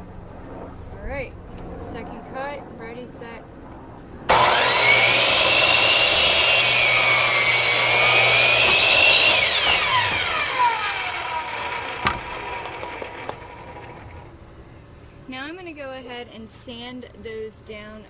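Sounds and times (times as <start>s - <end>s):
miter saw cutting wood: 4.3s - 14.4s.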